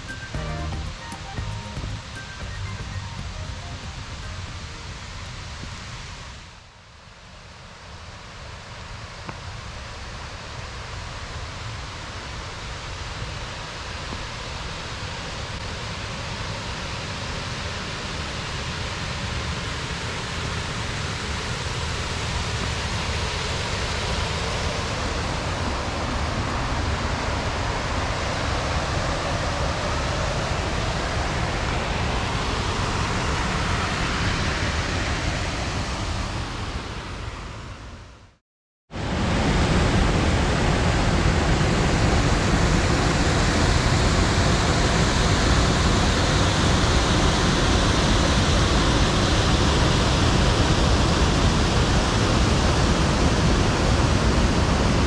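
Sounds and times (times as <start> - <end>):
waterfall rushing: 39.7 - 42.7.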